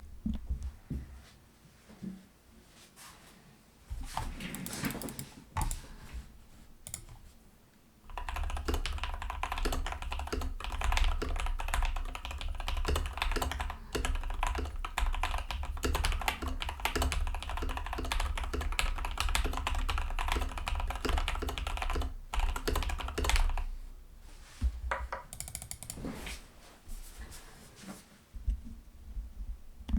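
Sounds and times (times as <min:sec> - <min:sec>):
typing on mechanical keyboard: 0:06.9 - 0:07.2, 0:08.1 - 0:23.7, 0:25.2 - 0:26.0.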